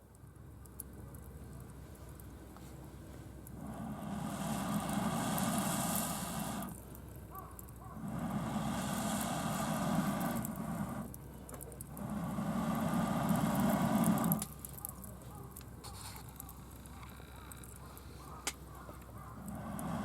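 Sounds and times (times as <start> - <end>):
burning wood crackling: 0.1 - 20.0
air blown into a fire: 3.6 - 6.8, 8.0 - 11.2, 11.8 - 14.6, 19.4 - 20.0.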